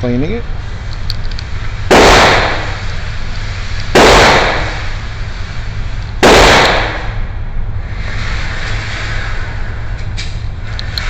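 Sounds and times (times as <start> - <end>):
pistol shots: 1.9 - 2.8, 3.9 - 4.8, 6.2 - 7.2.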